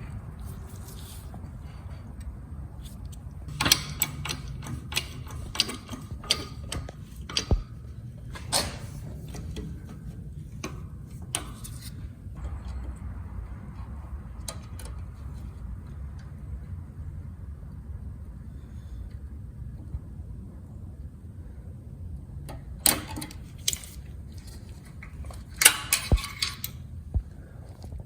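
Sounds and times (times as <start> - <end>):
steady low hum: 0.0 - 28.0
metal parts clinking and knocking: 3.5 - 12.0, 22.9 - 26.9.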